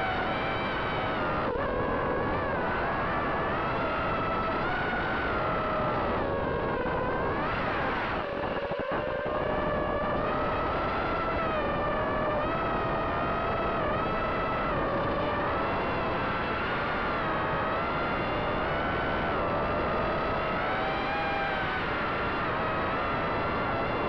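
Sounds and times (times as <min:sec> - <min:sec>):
drone motors whining: 0:00.0 - 0:24.0.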